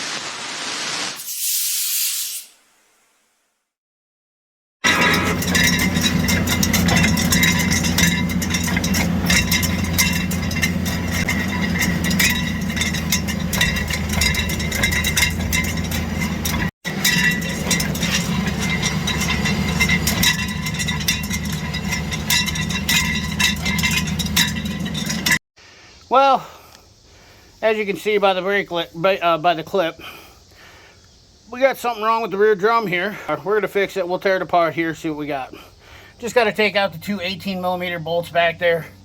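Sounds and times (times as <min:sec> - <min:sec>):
clattering and scraping from wheel: 0:04.9 - 0:25.4
vehicle engine drone: 0:04.9 - 0:25.4.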